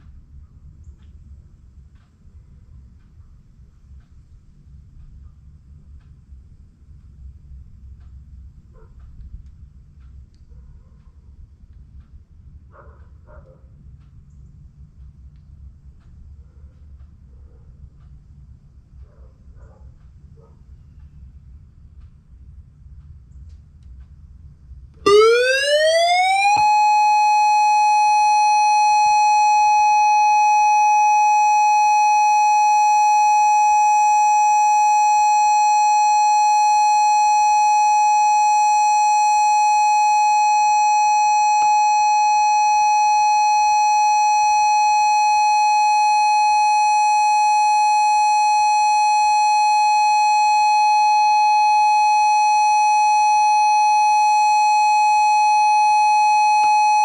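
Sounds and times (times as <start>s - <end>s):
warning siren: 25.1s - 57.0s.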